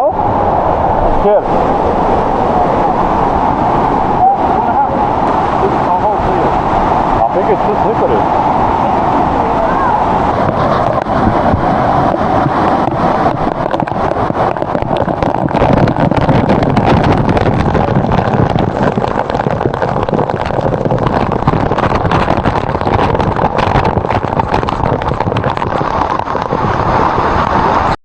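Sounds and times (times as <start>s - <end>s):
waterfall rushing: 0.0s - 28.0s.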